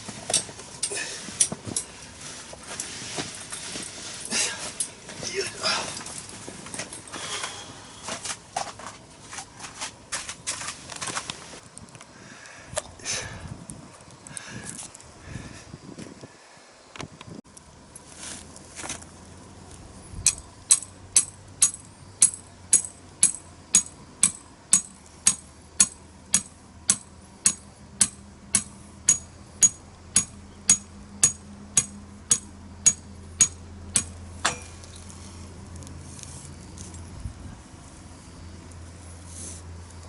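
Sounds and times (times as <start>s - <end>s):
low steady hum: 0.0s - 40.0s
sharp ringing taps: 20.3s - 34.7s.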